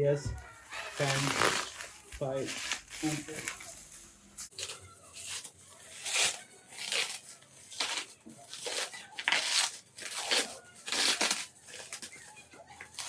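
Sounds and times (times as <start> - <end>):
packaging tearing and rustling: 0.5 - 13.0.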